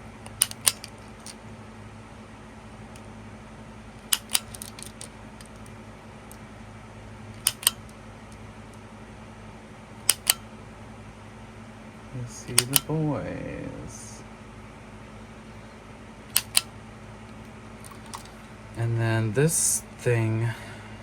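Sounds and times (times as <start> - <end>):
steady low hum: 0.0 - 21.0
plastic viewfinder double clicks: 0.3 - 1.4, 4.0 - 5.6, 7.4 - 7.9, 10.1 - 10.4, 12.5 - 12.9, 16.3 - 16.7.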